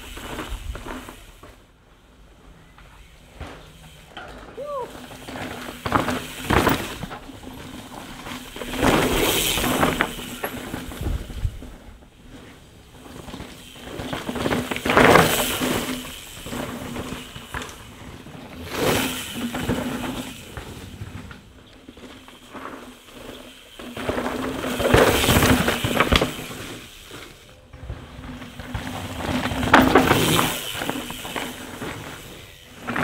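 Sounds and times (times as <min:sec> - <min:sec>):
bike rattling: 0:00.0 - 0:33.0
bike tyres skidding on dirt: 0:00.0 - 0:33.0.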